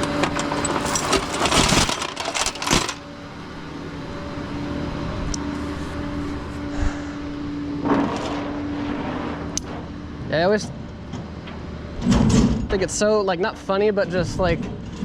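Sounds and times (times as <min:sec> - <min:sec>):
metallic clattering and clinking: 0:00.0 - 0:03.0
steady engine hum: 0:00.0 - 0:15.0.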